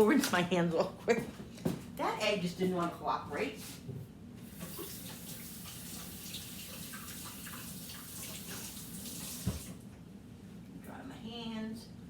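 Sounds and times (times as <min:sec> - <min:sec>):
water running from sink tap: 0:04.5 - 0:09.8.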